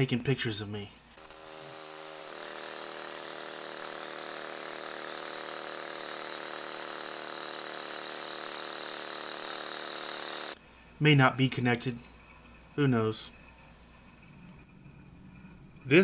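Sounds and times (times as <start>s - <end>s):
small engine running steadily: 1.2s - 10.6s.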